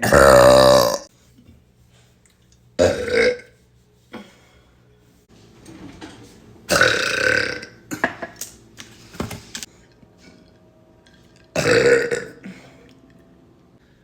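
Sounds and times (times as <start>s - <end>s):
woman burping: 0.0s - 1.1s, 2.8s - 3.5s, 6.7s - 8.1s, 11.6s - 12.9s.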